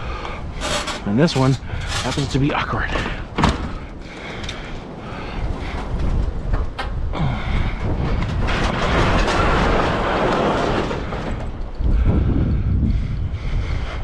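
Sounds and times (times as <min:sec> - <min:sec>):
wind rumbling on microphone: 0:00.0 - 0:14.0
heavy metal stove handled: 0:00.6 - 0:03.8.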